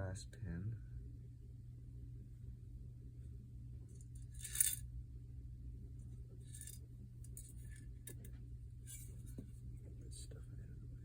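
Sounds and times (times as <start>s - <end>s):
metal pins and tools clinking: 4.2s - 4.8s, 6.5s - 8.3s.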